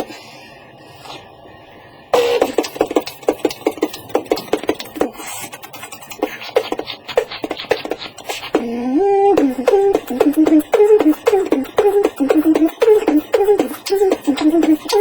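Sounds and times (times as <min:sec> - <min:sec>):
beatboxing: 0:02.2 - 0:15.0
hummed vocal line: 0:06.2 - 0:15.0.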